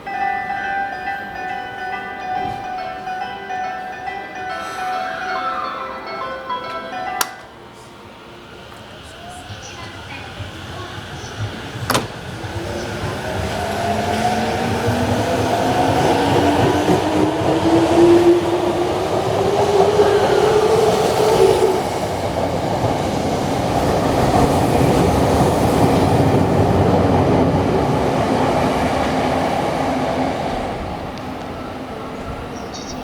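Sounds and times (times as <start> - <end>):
train wheel rumble: 4.4 - 33.0
rail clatter: 8.7 - 32.6.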